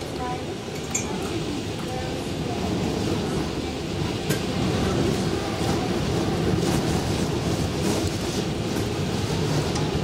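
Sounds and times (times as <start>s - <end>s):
storm wind buffeting microphone: 0.0s - 10.0s.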